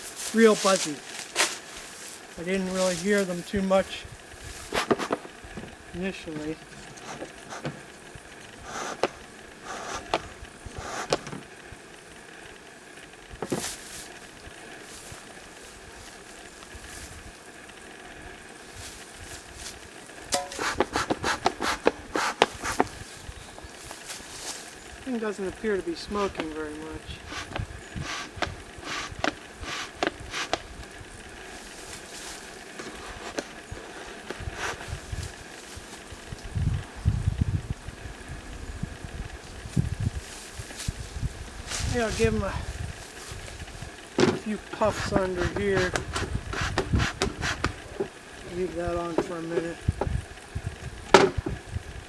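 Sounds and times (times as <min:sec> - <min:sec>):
bellows puffing air: 0:00.0 - 0:11.5, 0:18.0 - 0:24.8, 0:25.5 - 0:36.3, 0:40.9 - 0:51.7.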